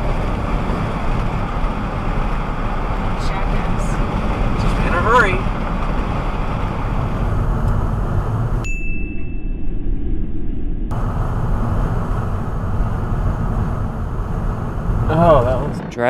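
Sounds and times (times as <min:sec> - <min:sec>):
car road and engine rumble: 0:00.0 - 0:09.0, 0:10.9 - 0:16.0
short high ding: 0:08.6 - 0:09.6.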